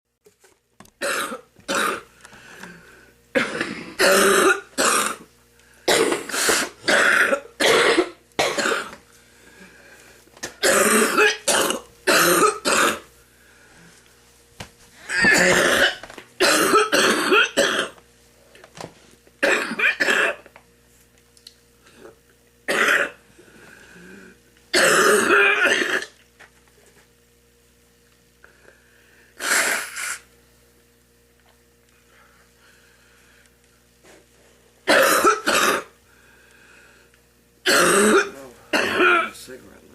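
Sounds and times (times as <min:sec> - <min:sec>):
woman coughing: 0:01.0 - 0:02.1, 0:03.3 - 0:05.3, 0:05.9 - 0:09.0, 0:10.4 - 0:13.1, 0:15.1 - 0:18.0, 0:19.4 - 0:20.4, 0:22.7 - 0:23.2, 0:24.7 - 0:26.1, 0:34.9 - 0:35.9, 0:37.7 - 0:39.4.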